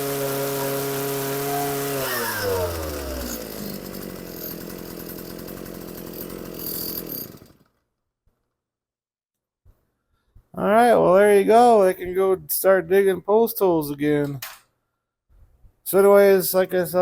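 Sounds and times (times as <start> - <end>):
two-stroke engine running: 0.0 - 7.6.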